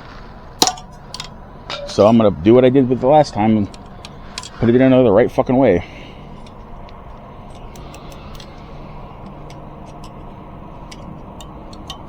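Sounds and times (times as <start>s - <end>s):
low background hum: 0.0s - 12.0s
light metallic clicks: 6.3s - 12.0s.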